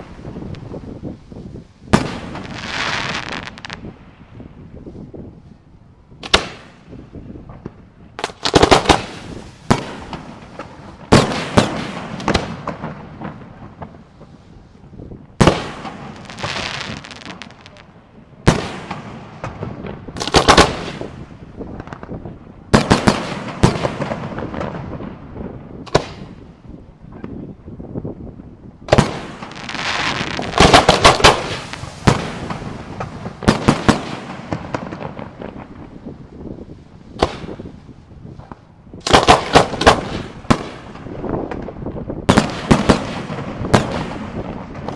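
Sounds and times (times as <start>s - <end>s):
fireworks crackling hiss: 0.0s - 4.0s, 8.2s - 19.4s, 28.9s - 44.9s
fireworks bursting with bangs: 0.0s - 4.3s, 6.2s - 26.6s, 28.9s - 44.9s.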